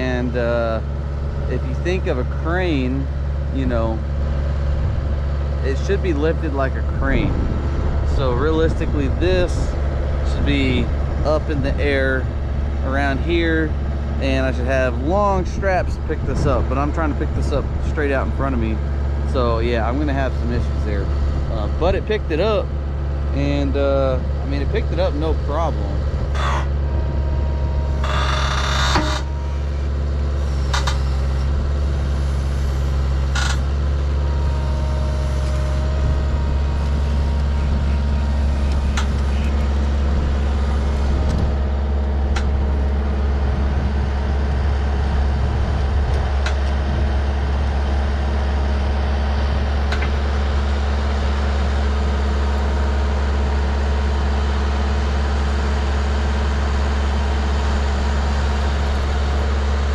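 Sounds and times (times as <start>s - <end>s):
skid steer engine droning: 0.0s - 59.9s.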